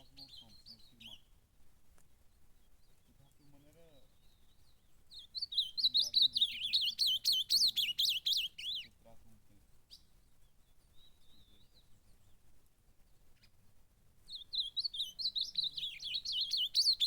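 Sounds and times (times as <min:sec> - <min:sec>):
bird singing warbling notes: 0:03.4 - 0:08.9, 0:14.3 - 0:17.0.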